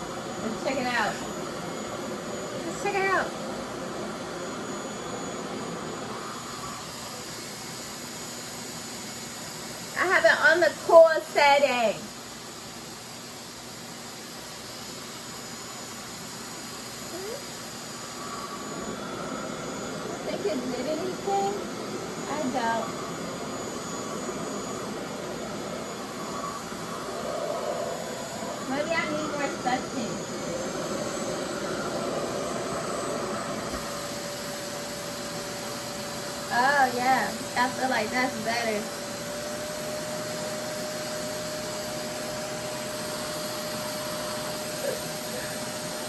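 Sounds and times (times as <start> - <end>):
hair dryer running: 0.0 - 46.0
faint motor hum: 15.2 - 46.0.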